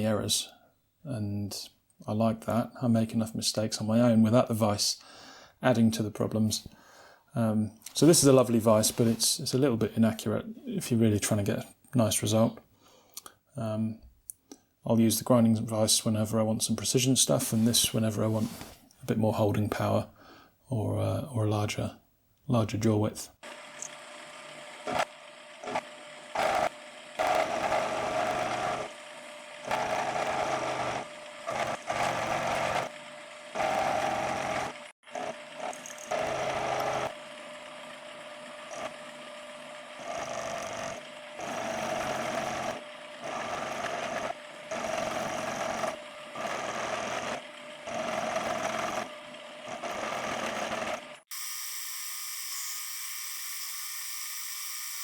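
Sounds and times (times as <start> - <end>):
metal cutting tool: 23.5 - 55.0.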